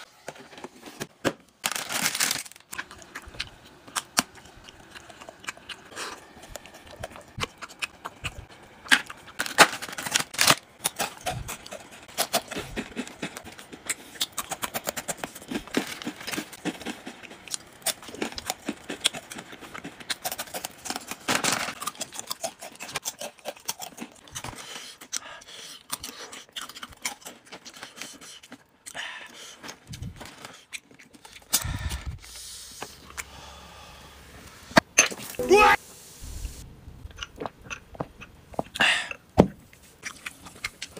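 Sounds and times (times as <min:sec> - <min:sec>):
plastic packaging crinkling: 0:01.6 - 0:02.9, 0:09.3 - 0:10.7.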